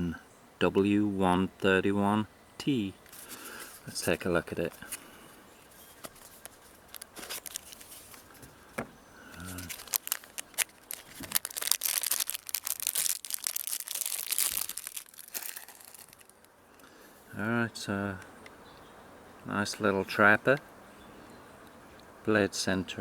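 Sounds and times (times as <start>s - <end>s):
packaging crinkling and tearing: 5.9s - 8.6s, 9.3s - 16.5s.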